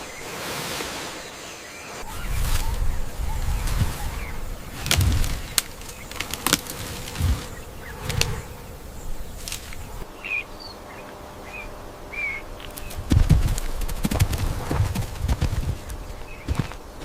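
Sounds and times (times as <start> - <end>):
bird chirps: 1.2 - 6.4, 7.0 - 13.1
animal hoofbeats on ground: 12.6 - 17.0.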